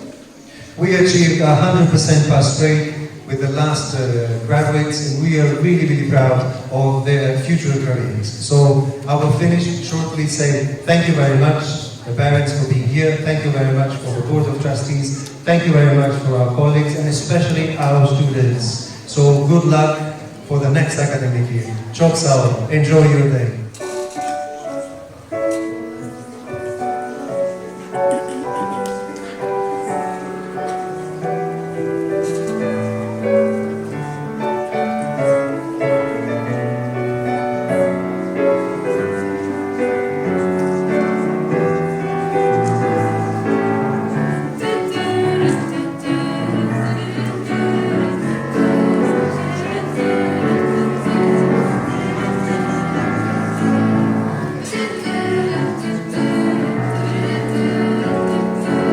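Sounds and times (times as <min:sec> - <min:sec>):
piano accompaniment: 0:00.0 - 0:58.9
choral singing: 0:42.2 - 0:58.9.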